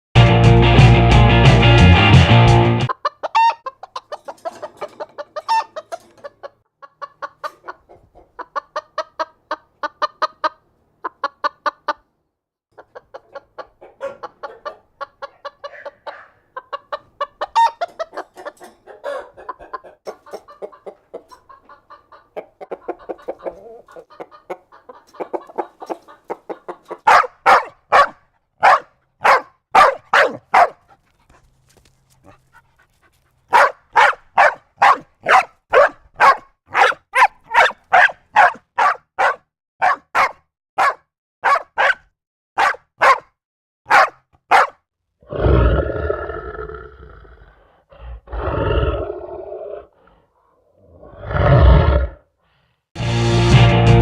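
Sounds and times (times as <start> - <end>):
sharp hen calls: 2.9 - 12.0, 12.8 - 28.0
hens clucking: 2.9 - 12.1, 12.7 - 28.0.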